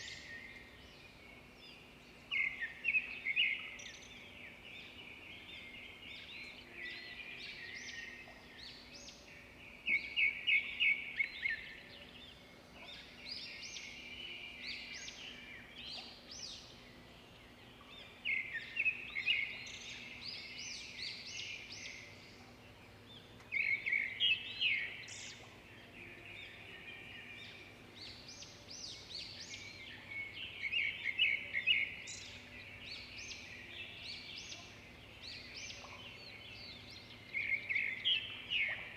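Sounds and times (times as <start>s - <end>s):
songbirds chirping and trilling: 0.0s - 38.9s.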